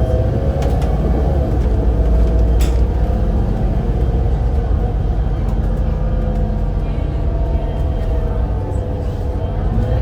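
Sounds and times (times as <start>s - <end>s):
bus engine rumbling with whine: 0.0s - 10.0s.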